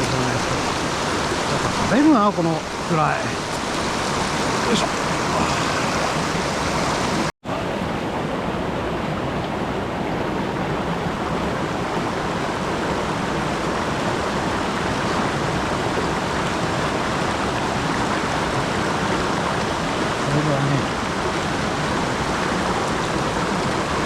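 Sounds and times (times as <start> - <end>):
mountain stream rushing: 0.0 - 24.0.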